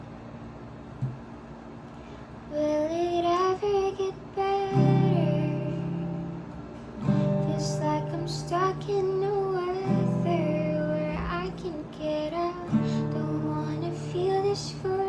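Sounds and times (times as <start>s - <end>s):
woman singing: 2.5s - 6.4s, 7.1s - 15.0s
acoustic guitar chords: 2.8s - 15.0s.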